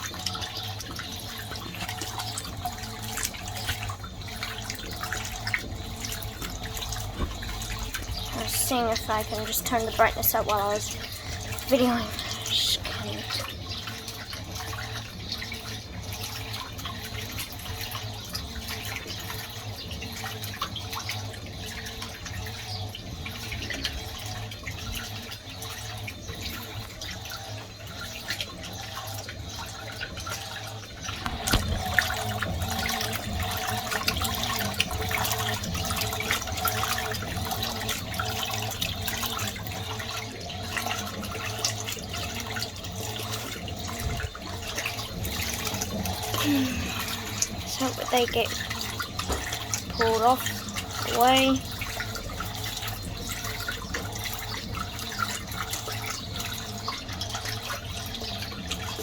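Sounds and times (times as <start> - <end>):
steady hum: 0.0 - 19.6, 29.0 - 54.5
washing machine water splashing: 0.0 - 59.0.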